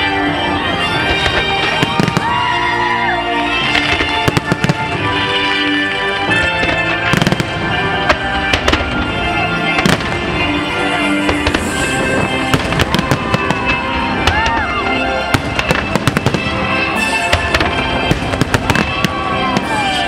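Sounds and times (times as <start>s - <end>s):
loud music: 0.0s - 20.0s
fireworks bangs: 0.1s - 2.9s, 3.5s - 20.0s.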